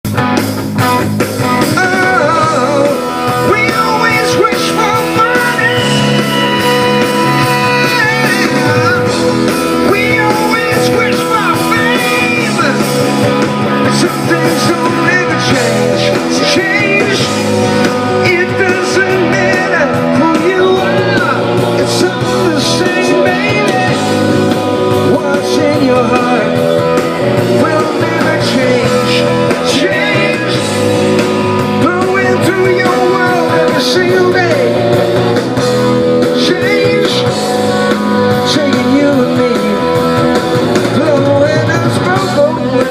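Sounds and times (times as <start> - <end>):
electric guitar chords: 0.0 - 42.9
live rock band playing: 0.0 - 42.9
man singing: 1.5 - 35.4, 36.1 - 42.9.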